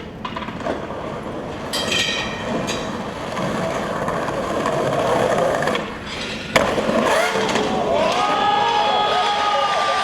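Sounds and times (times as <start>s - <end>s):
skateboard wheels rolling: 0.0s - 10.0s.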